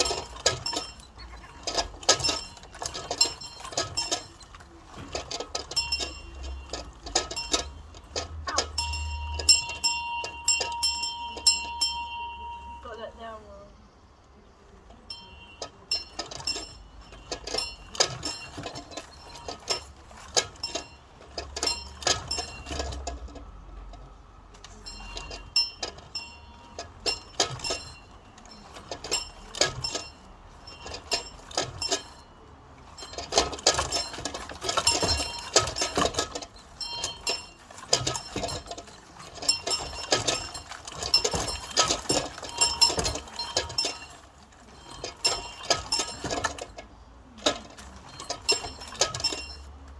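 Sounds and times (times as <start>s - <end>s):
bell clanging: 5.6s - 13.4s, 24.7s - 46.7s.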